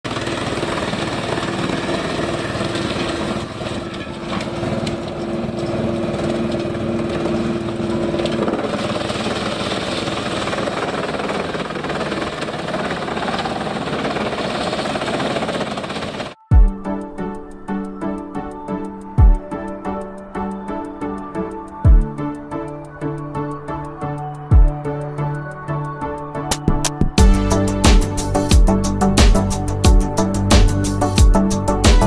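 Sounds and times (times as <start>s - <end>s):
machine running with steady hum: 0.1s - 16.4s.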